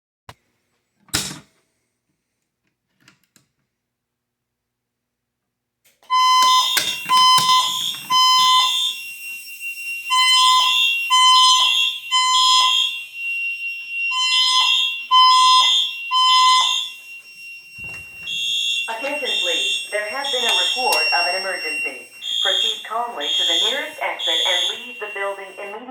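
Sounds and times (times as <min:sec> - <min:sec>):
fire alarm beeps: 0:06.0 - 0:25.9.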